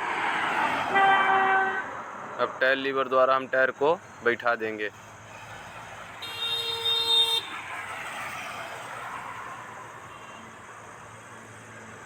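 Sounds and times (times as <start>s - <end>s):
road vehicle noise: 0.0s - 12.0s
vehicle horn blare: 0.9s - 1.9s, 6.2s - 7.5s.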